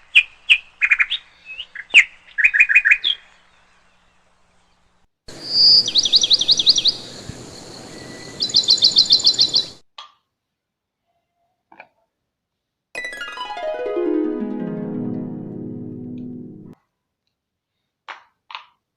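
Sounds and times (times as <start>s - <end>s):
songbird singing: 5.4s - 9.8s.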